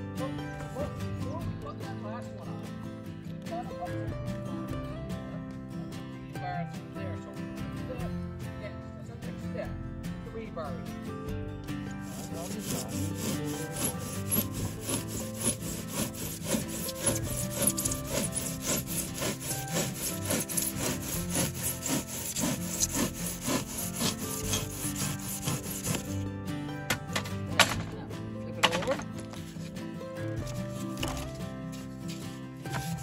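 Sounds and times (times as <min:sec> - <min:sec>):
hand saw strokes: 0:00.4 - 0:01.4, 0:11.9 - 0:26.2, 0:28.6 - 0:33.0.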